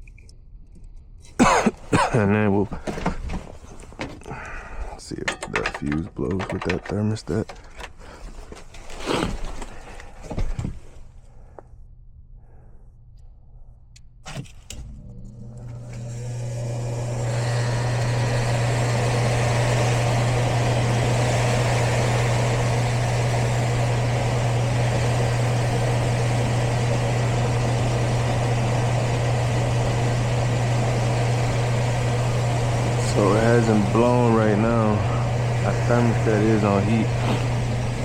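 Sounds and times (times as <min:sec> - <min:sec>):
furnace blower motor humming: 0:01.4 - 0:10.7, 0:14.8 - 0:38.0.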